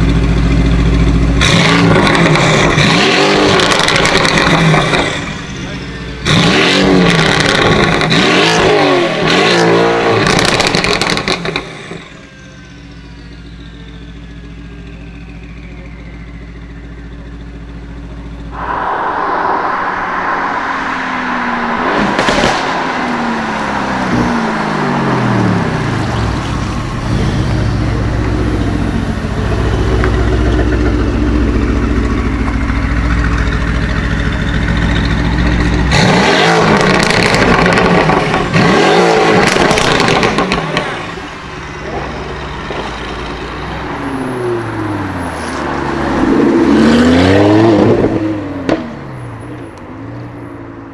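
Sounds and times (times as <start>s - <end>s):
car engine revving: 16.3s - 49.2s
car engine idling: 22.2s - 35.9s.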